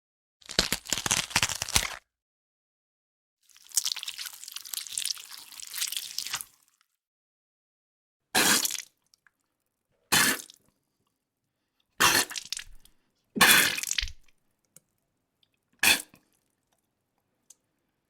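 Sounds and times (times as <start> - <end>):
wet squirting splashes: 12.0 - 14.2.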